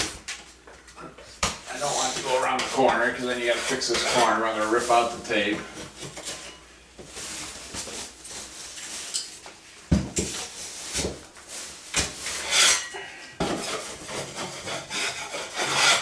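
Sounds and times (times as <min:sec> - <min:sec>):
scratchy scraping: 0:01.8 - 0:05.2.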